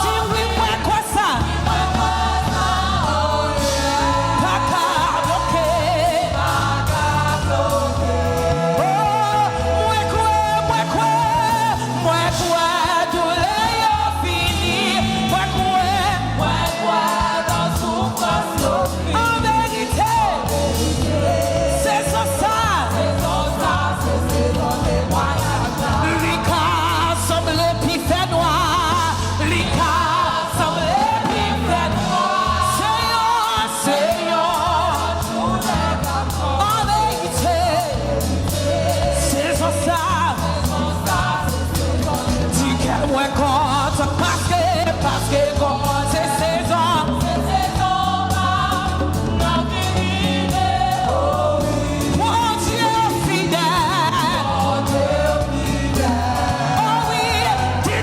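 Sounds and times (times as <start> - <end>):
backing singers: 0.0 - 58.0
band with bass and drums: 0.0 - 58.0
voices singing with vibrato: 0.0 - 58.0.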